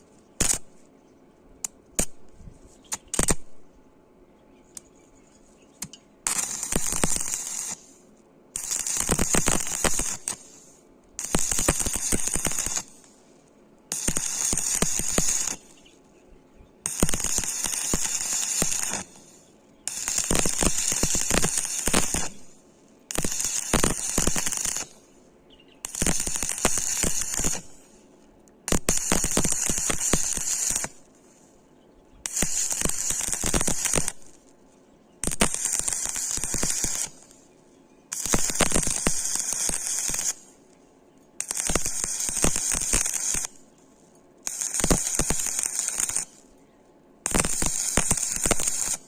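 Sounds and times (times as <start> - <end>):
welding arc crackling: 0.0 - 0.8, 2.9 - 3.5, 5.8 - 13.2, 13.9 - 15.9, 16.8 - 25.1, 25.8 - 28.0, 28.6 - 31.4, 32.2 - 34.5, 35.2 - 37.4, 38.1 - 40.7, 41.4 - 43.6, 44.4 - 46.5, 47.2 - 49.0.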